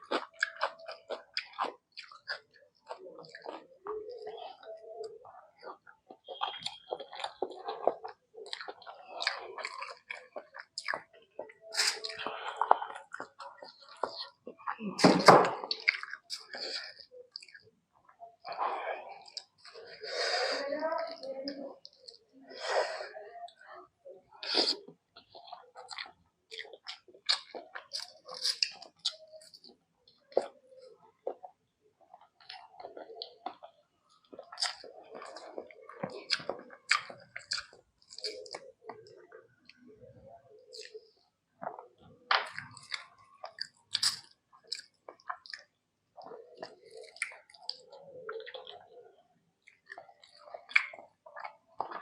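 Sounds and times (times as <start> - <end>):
person chewing and lip-smacking: 0.0 - 17.7, 18.4 - 20.0, 24.4 - 52.0
smacking mouth clicks: 49.7 - 52.0.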